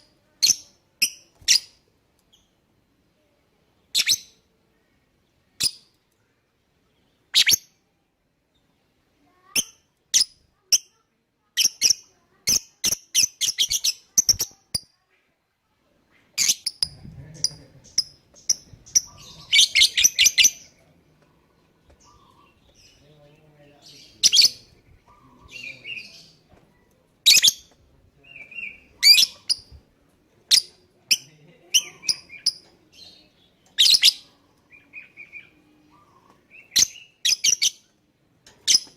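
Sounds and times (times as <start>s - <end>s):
lovebird chirping: 3.8s - 6.0s, 6.9s - 7.8s, 9.4s - 15.0s, 16.3s - 29.8s, 30.4s - 38.0s.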